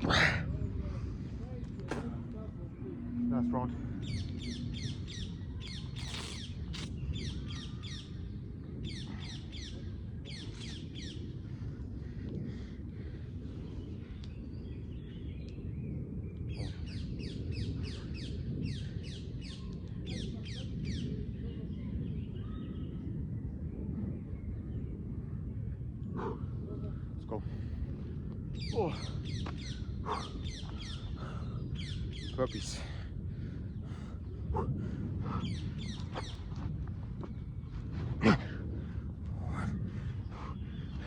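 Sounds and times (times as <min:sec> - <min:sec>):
low outdoor rumble: 0:00.0 - 0:41.0.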